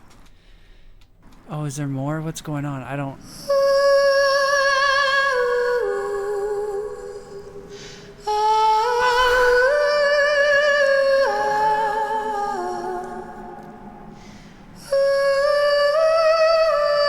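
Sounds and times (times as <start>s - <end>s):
woman singing wordless melody: 3.2s - 17.0s
audible breath: 7.6s - 10.0s, 13.8s - 14.8s.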